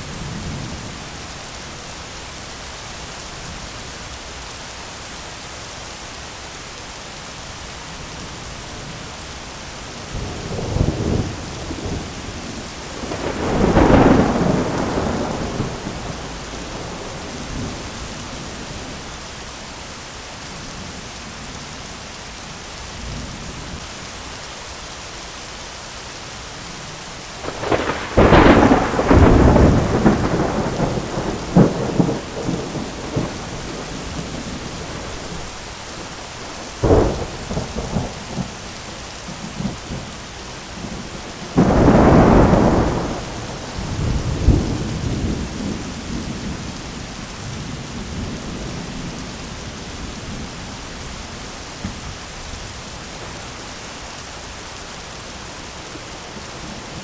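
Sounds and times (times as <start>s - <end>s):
steady rain: 0.0s - 57.0s
thunder rumbling and cracking: 10.1s - 19.0s, 27.4s - 51.0s.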